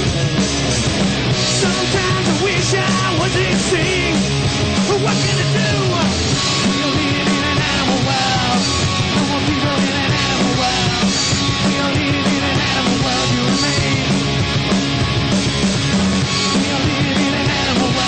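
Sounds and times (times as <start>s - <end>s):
bass guitar: 0.0s - 18.0s
distorted electric guitars: 0.0s - 18.0s
drums beating: 0.0s - 18.0s.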